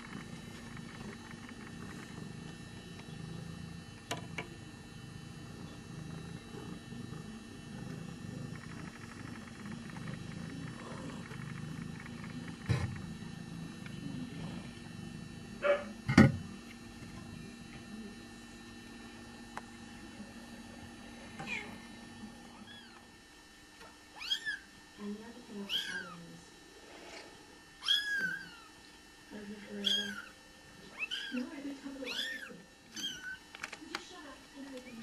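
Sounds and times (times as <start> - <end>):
cat purring: 0.0 - 17.6.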